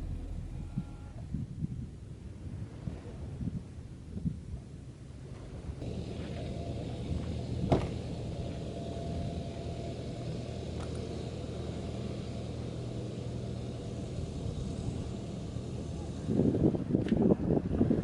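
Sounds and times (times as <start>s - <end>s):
low engine hum: 0.0s - 1.5s, 5.8s - 18.0s.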